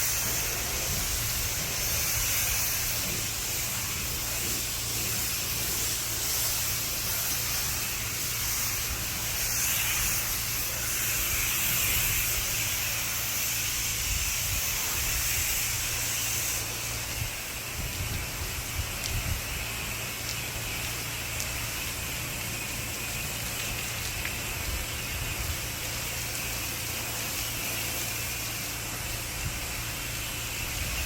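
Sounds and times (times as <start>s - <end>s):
pressure washer spraying water: 0.0s - 31.0s.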